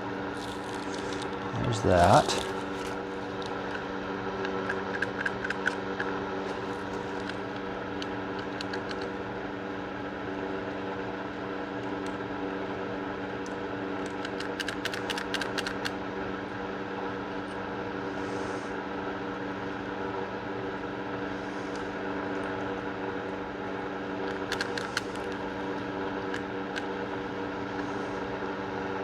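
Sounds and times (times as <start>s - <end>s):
fan hum: 0.0s - 29.0s
gun parts clicking: 4.4s - 7.6s, 24.3s - 25.4s.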